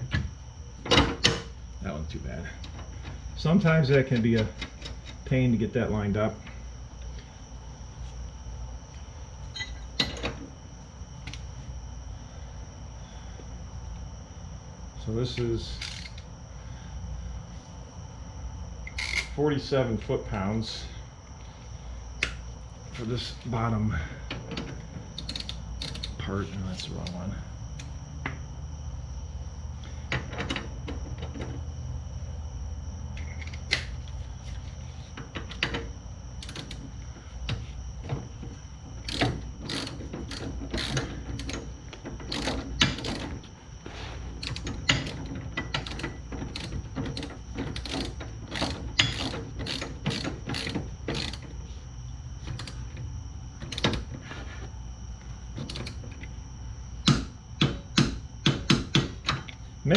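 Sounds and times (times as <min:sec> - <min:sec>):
steady low hum: 0:00.0 - 0:59.9
ratchet clicking: 0:18.9 - 0:19.4, 0:25.2 - 0:26.2, 0:36.4 - 0:36.8, 0:39.0 - 0:41.7, 0:42.3 - 0:43.3, 0:44.4 - 0:51.5.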